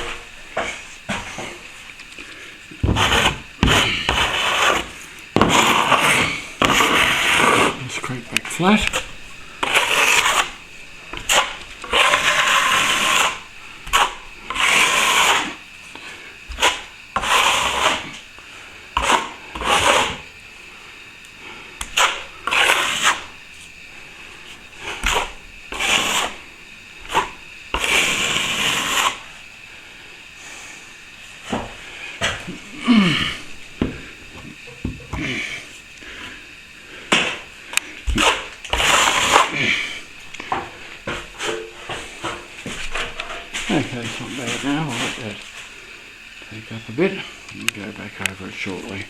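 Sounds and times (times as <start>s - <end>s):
scraper rasping on plaster: 2.8s - 15.6s, 16.5s - 18.2s, 19.0s - 20.3s, 21.8s - 23.3s, 24.8s - 26.4s, 27.1s - 29.3s, 38.1s - 40.0s.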